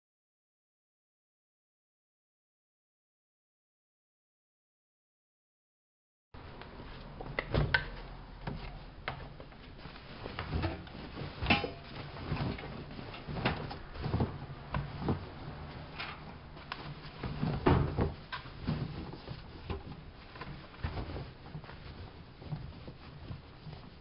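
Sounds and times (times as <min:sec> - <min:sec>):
washing machine knocks and clunks: 0:17.4 - 0:18.3.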